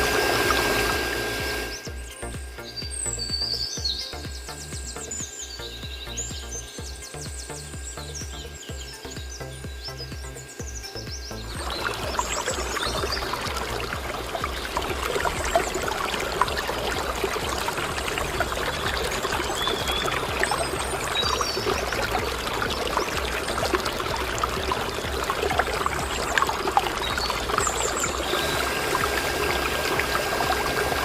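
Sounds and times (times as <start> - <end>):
small water splashes: 0.0 - 2.6, 11.2 - 31.0
water pouring and trickling: 0.0 - 31.0
faint bird chirps: 1.7 - 29.7.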